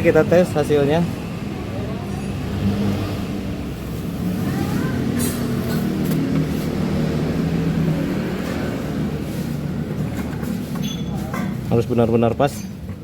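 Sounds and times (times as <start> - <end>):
vehicle engine running: 0.0 - 10.7.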